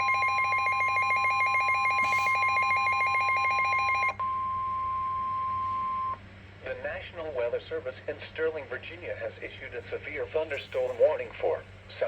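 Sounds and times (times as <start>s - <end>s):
warbling electronic alert: 0.0s - 4.1s
steady single alarm tone: 0.0s - 4.2s.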